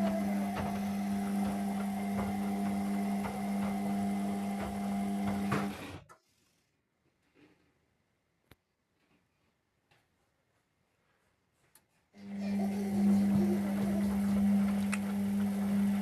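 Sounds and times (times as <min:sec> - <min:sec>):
washing machine humming: 0:00.0 - 0:06.0, 0:12.2 - 0:16.0.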